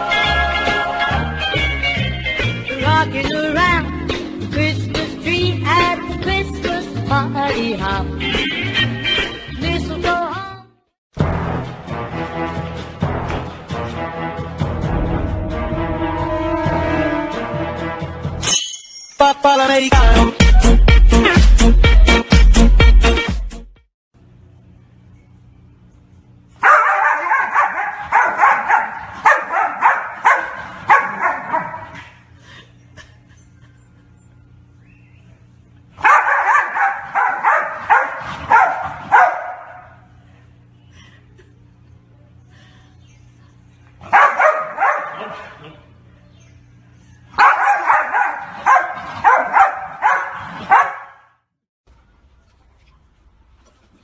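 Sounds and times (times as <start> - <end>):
dog barking loudly: 26.6 - 32.0, 36.0 - 40.0, 44.0 - 45.8, 47.4 - 51.3.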